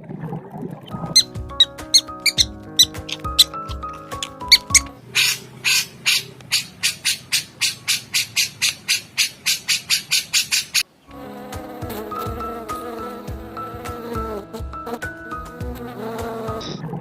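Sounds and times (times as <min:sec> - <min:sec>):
steady music: 0:01.0 - 0:05.0, 0:11.1 - 0:16.7
insect raspy chirping: 0:01.0 - 0:10.8.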